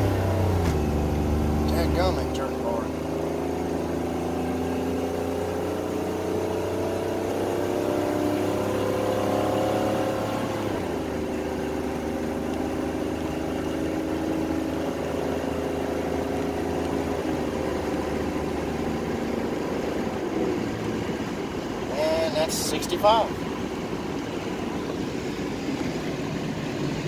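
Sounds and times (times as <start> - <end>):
car engine accelerating: 0.0 - 27.0.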